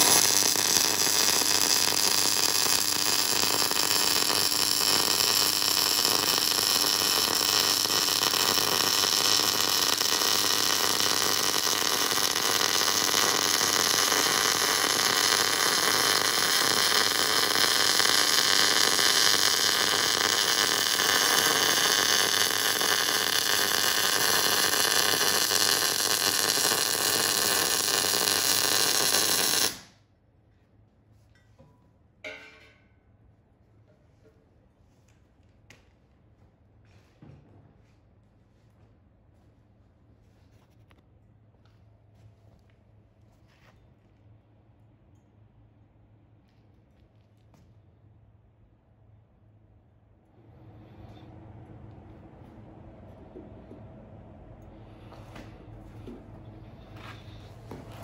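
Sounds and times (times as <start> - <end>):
welder hissing and crackling: 0.0 - 29.9.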